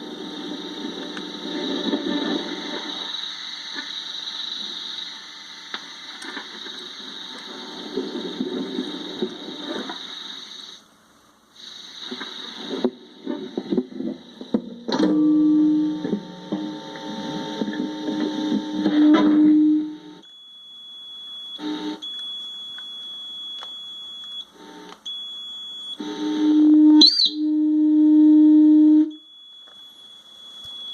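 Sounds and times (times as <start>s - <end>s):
high electronic whine: 0.0s - 10.9s, 11.5s - 30.9s
low electronic tone: 14.7s - 20.5s, 24.5s - 30.9s.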